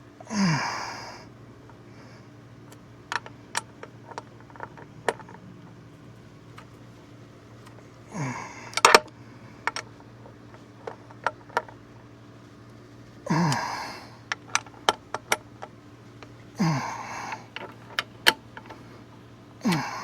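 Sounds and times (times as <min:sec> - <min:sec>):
man grunting with effort: 0:00.3 - 0:01.2, 0:08.1 - 0:08.8, 0:13.3 - 0:14.2, 0:16.6 - 0:17.4, 0:19.6 - 0:20.0
socket wrench clicking: 0:02.7 - 0:05.4, 0:08.7 - 0:09.1, 0:09.7 - 0:09.9, 0:14.3 - 0:16.3, 0:17.3 - 0:18.8.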